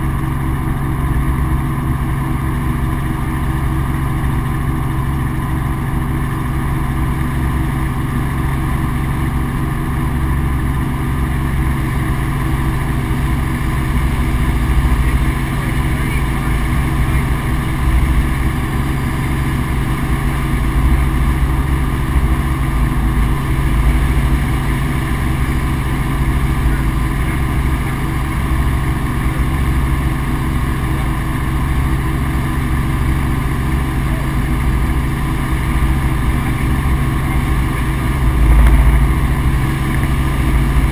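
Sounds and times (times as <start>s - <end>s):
helicopter engine and rotor drone: 0.0s - 40.9s.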